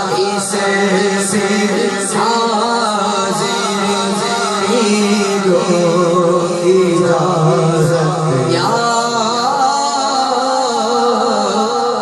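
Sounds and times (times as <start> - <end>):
man singing unaccompanied: 0.0 - 12.0.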